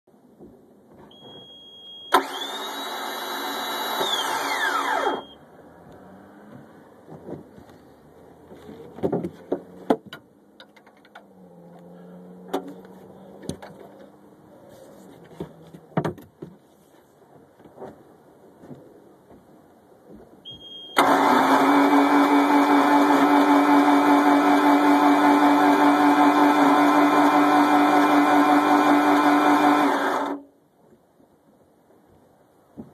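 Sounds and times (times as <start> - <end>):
starter motor whine: 1.1 - 5.4, 20.9 - 30.4
clicks and knocks: 9.0 - 11.3.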